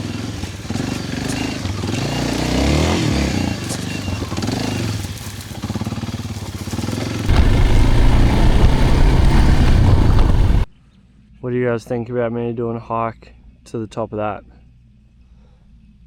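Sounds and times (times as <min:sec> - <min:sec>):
motorbike engine running: 0:00.0 - 0:10.7.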